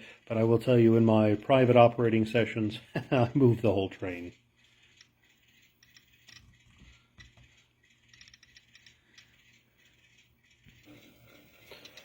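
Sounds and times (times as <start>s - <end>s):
model train clicking on track: 3.5s - 12.0s.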